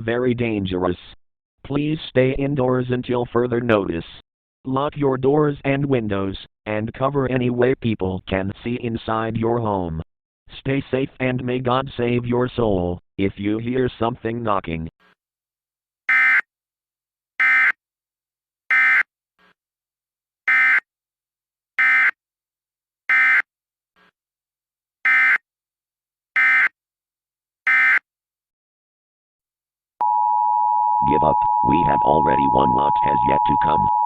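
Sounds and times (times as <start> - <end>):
steady electronic tone: 30.0 - 34.0.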